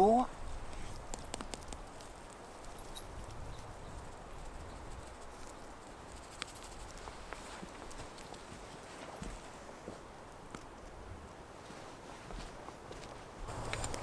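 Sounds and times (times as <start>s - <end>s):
wood fire crackling and popping: 0.3s - 3.4s, 13.5s - 14.0s.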